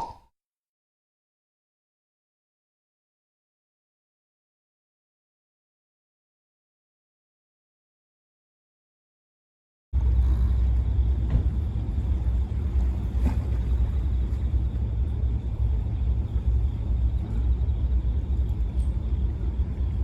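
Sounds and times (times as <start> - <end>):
boat engine rumble: 10.0 - 20.0.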